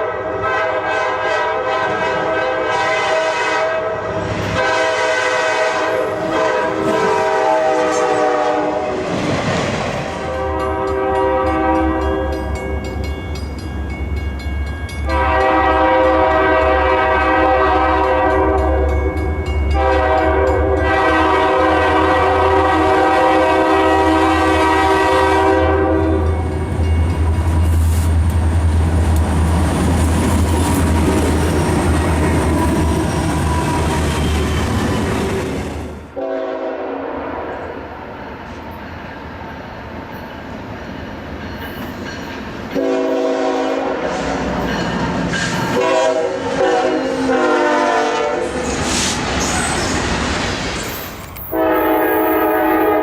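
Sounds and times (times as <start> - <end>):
locomotive air horn blasts: 0.0 - 9.1, 10.2 - 12.4, 15.1 - 18.9, 19.7 - 26.4, 36.1 - 37.8, 42.8 - 44.5, 45.7 - 48.6, 51.5 - 53.0
train rumble and rail noise: 0.0 - 53.0.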